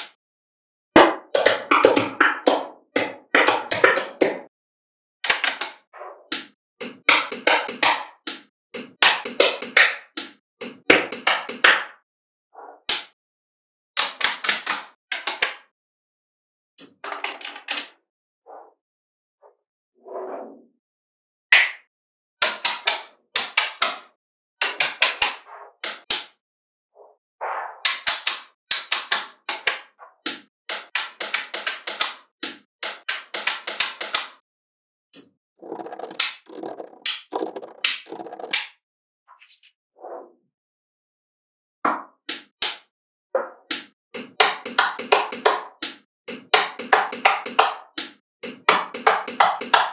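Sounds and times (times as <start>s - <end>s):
magnetic balls clicking together: 5.2s - 11.7s, 27.9s - 34.4s, 43.7s - 49.9s.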